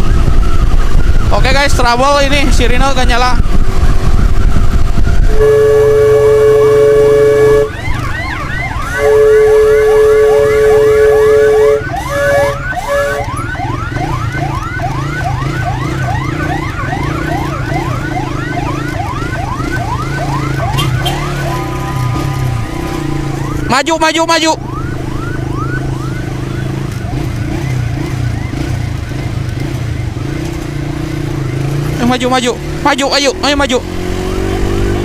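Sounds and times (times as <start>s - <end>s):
siren fast yelp: 0.0s - 29.0s
vehicle engine humming: 0.0s - 35.0s
loud steady horn tone: 5.1s - 14.1s, 20.0s - 26.1s.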